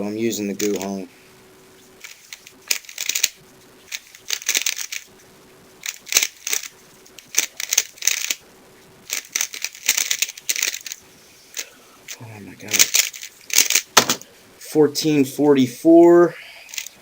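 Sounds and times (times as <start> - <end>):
plastic puzzle cube clacking: 2.0 - 5.1, 5.8 - 8.4, 9.1 - 11.0, 12.7 - 14.2.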